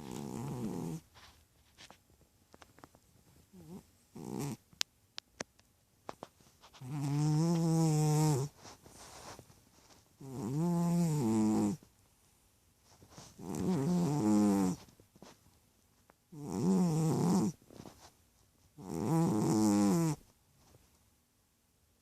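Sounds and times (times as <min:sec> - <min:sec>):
cat snoring: 0:00.0 - 0:01.0, 0:03.5 - 0:04.6, 0:06.8 - 0:08.5, 0:10.2 - 0:11.8, 0:13.4 - 0:14.8, 0:16.3 - 0:17.6, 0:18.8 - 0:20.2.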